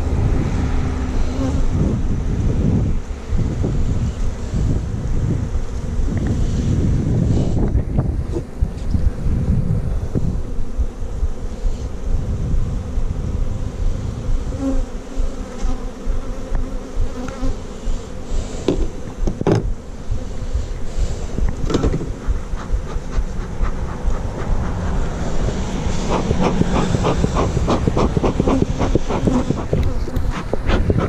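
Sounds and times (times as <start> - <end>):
honeybees buzzing: 0.0 - 31.0
sharp knocks: 18.7 - 19.7.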